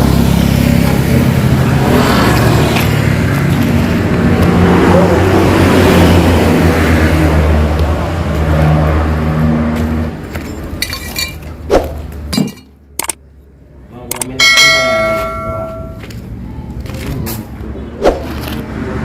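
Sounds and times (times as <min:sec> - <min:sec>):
sharp metallic clink: 0:14.1 - 0:16.0.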